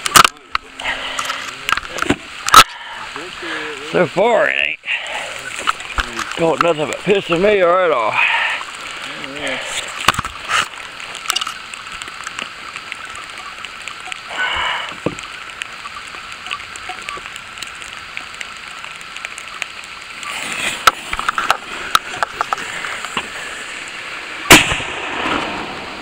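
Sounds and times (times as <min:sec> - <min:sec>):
rain falling: 0:00.0 - 0:26.0
loud sharp bang: 0:24.5 - 0:25.8.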